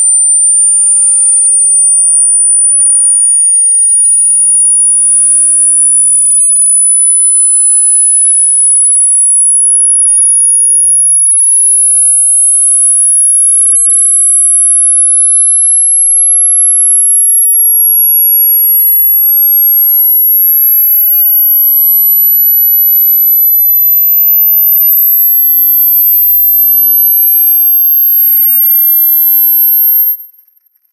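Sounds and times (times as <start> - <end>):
high-pitched electronic tone rising: 0.0 - 4.5, 19.3 - 30.5.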